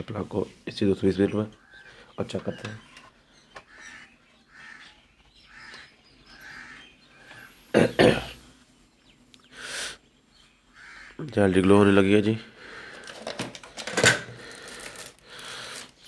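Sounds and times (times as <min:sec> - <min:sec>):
crows cawing faintly: 0:01.5 - 0:07.9, 0:10.4 - 0:11.4, 0:12.5 - 0:13.3
person coughing: 0:07.8 - 0:08.4
breathy burst: 0:14.2 - 0:16.0.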